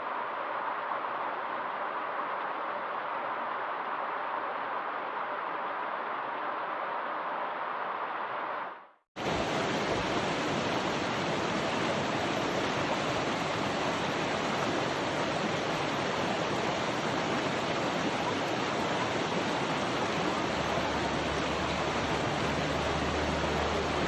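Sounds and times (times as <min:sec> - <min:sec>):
stream water flowing: 0:09.2 - 0:24.0.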